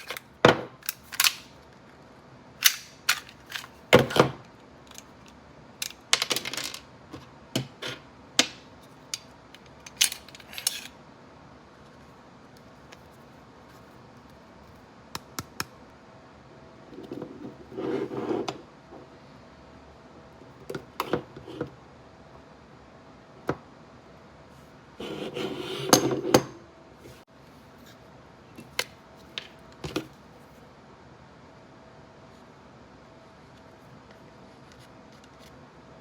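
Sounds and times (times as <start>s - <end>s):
pistol parts clicking and knocking: 2.6s - 4.2s
rubbing and rattling handling: 2.6s - 5.1s.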